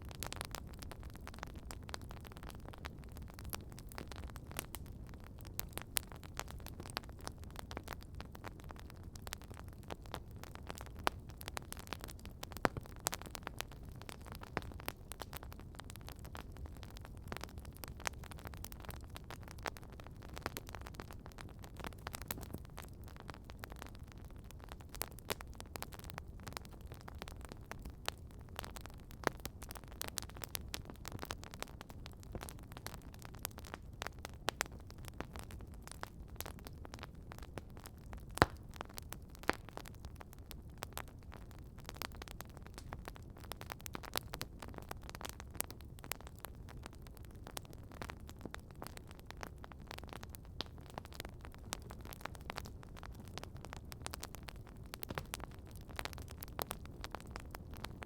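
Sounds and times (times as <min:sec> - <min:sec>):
campfire crackling and popping: 0:00.0 - 0:58.0
low rumble of burning fire: 0:00.0 - 0:58.0.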